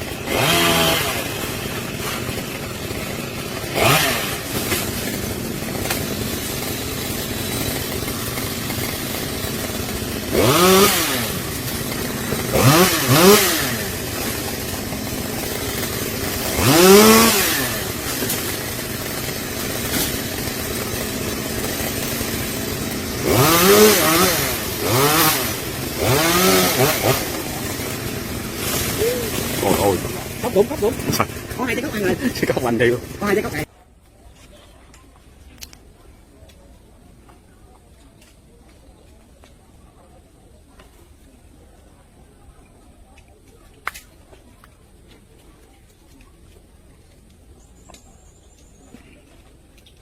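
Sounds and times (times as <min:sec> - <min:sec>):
chainsaw engine idling: 0:00.0 - 0:33.7
chainsaw throttle revving: 0:00.0 - 0:33.7.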